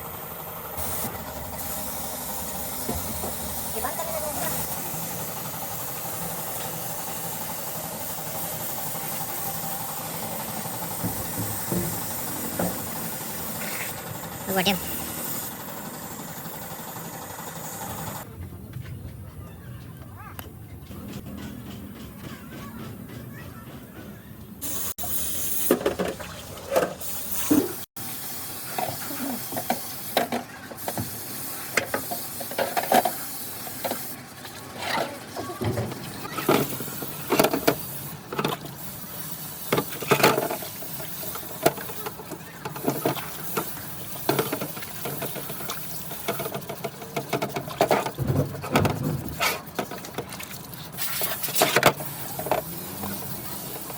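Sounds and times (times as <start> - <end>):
machinery motor hum with whine: 0.0 - 18.3
hiss: 0.8 - 9.9, 50.8 - 53.9
knocks and clatter: 20.8 - 24.4, 41.6 - 50.4
loud spraying hiss: 51.0 - 53.9.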